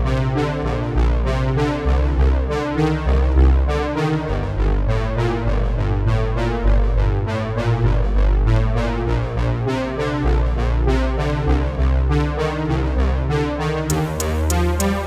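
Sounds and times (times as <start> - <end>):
electronic music with synthesizer: 13.9 - 15.0.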